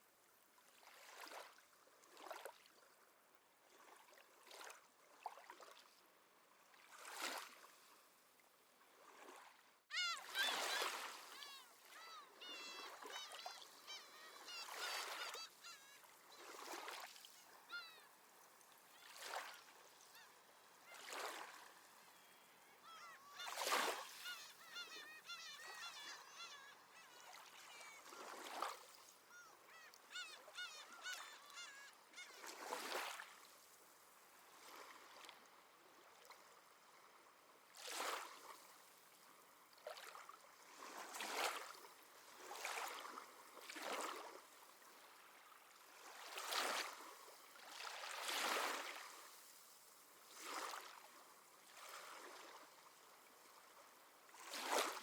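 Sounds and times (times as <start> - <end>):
small waves washing in: 3.7 - 30.6, 32.0 - 55.0
seabirds calling: 9.9 - 33.0.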